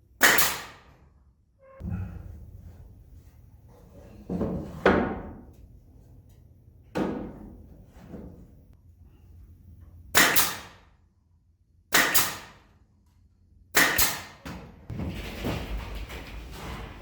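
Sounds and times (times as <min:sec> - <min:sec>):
knocking and scraping: 0:03.7 - 0:05.6, 0:14.9 - 0:17.0.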